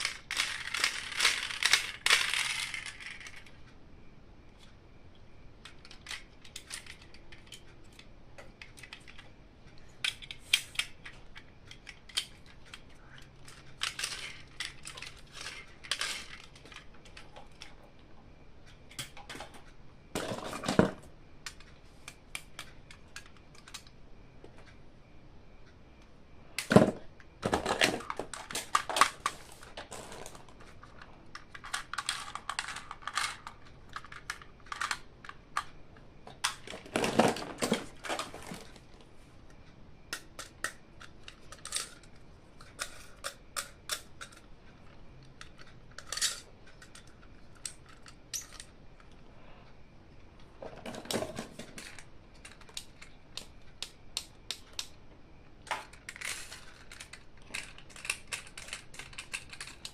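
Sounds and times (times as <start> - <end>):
plastic toys clicking: 0.0 - 3.6, 5.6 - 9.3, 10.0 - 17.8, 20.2 - 23.9, 26.6 - 38.8, 40.1 - 49.2, 50.6 - 55.0, 55.6 - 59.9.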